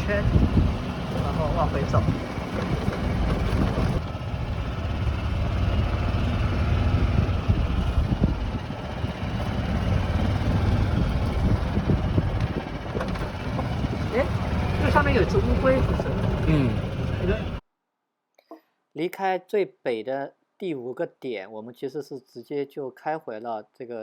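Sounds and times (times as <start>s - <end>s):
road noise: 0.0s - 17.6s
vehicle engine rumble: 0.0s - 17.6s.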